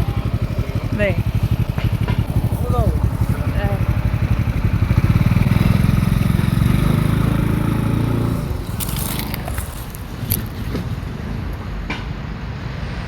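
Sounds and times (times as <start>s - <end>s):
small motorcycle engine running: 0.0s - 11.5s
crisp crackles and clicks: 8.3s - 11.1s.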